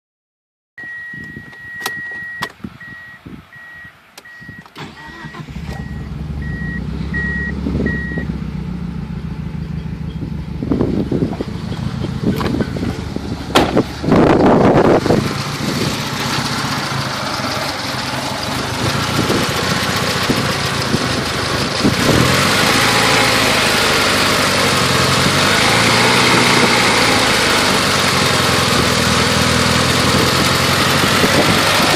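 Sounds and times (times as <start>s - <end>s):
car warning chime beeping: 0.8s - 8.3s
car engine starting and idling: 0.8s - 31.9s.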